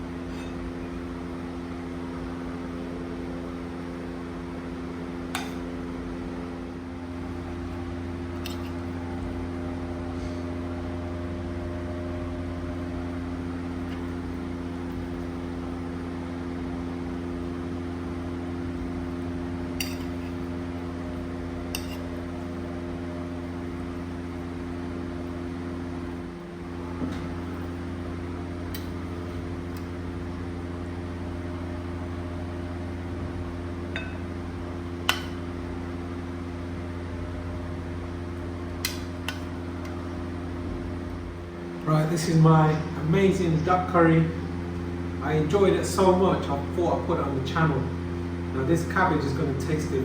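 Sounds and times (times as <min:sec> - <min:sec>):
mechanical fan hum: 0:00.0 - 0:50.0
dishes clinking: 0:34.0 - 0:34.2.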